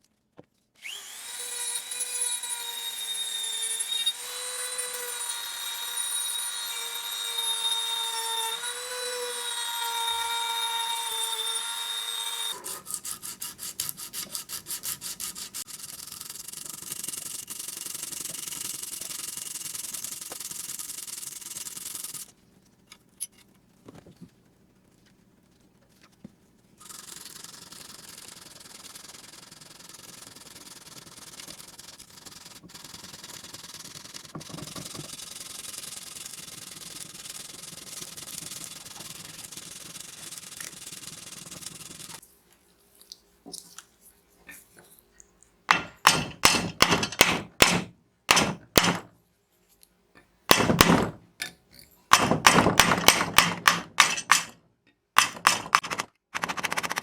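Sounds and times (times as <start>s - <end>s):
electric hand tool motor whining: 0.8s - 13.3s
sanding noise: 12.1s - 22.4s, 26.8s - 42.2s.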